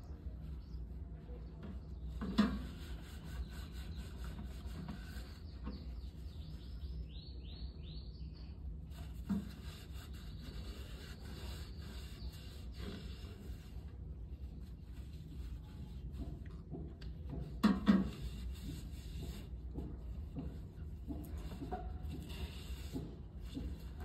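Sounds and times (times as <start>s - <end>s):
scraping and handling noises: 1.4s - 6.4s.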